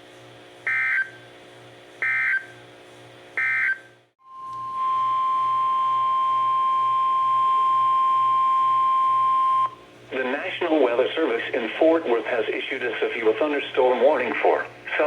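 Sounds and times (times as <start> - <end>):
steady alarm tone: 0.7 - 1.2, 2.0 - 2.5, 3.4 - 9.8.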